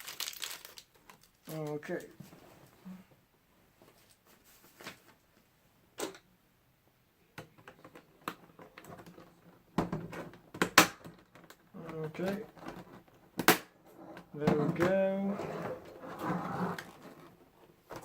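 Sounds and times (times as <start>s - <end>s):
plastic parts rattling: 0.0s - 2.2s
plastic parts clicking and knocking: 7.4s - 15.0s.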